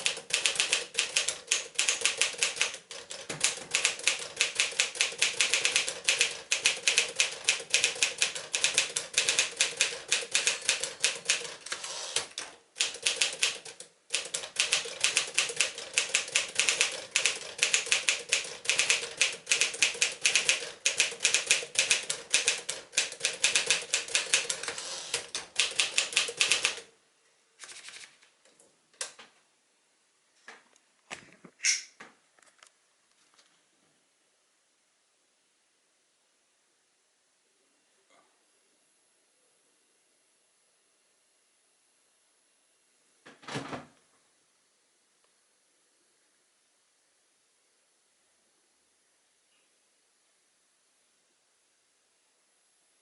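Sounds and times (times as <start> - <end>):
manual typewriter typing: 0.0 - 26.9.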